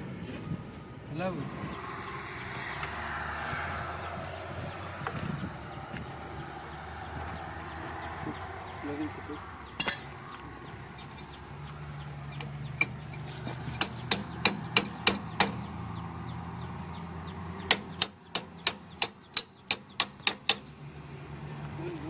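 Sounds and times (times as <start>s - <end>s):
hammer striking steel: 9.8s - 10.2s.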